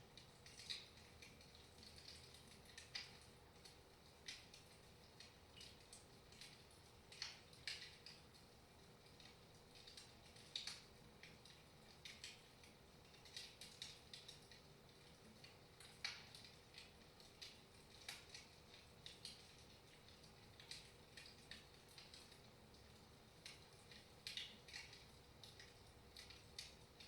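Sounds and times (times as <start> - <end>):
wood fire crackling: 0.0 - 27.0.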